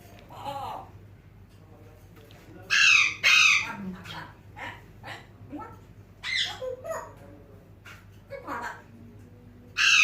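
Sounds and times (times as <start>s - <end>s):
parrot calling: 2.7s - 7.2s, 9.8s - 10.0s.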